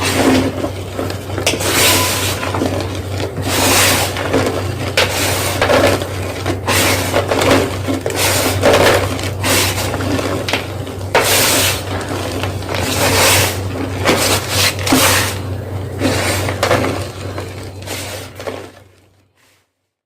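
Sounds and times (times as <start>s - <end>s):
chalk crunching: 0.0s - 18.8s.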